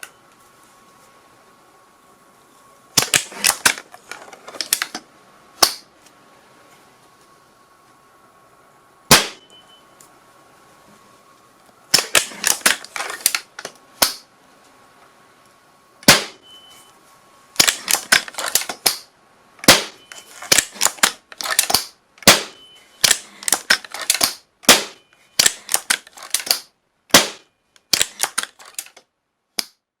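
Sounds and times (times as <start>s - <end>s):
gunshots: 9.1s - 9.4s, 16.0s - 16.4s, 19.6s - 20.9s, 21.7s - 23.2s, 24.2s - 25.7s, 27.1s - 28.3s.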